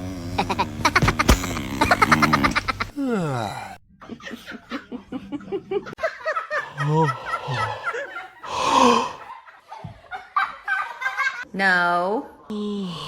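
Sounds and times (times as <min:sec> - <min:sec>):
person laughing: 0:00.4 - 0:03.4, 0:04.0 - 0:09.3.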